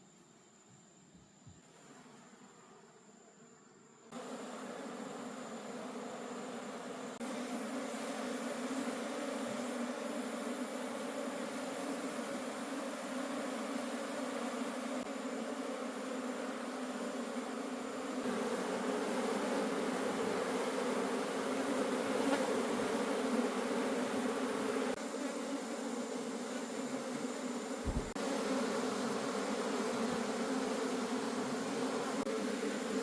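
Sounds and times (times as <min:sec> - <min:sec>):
honey bees buzzing: 0:01.7 - 0:33.0
short low thump: 0:27.8 - 0:28.2.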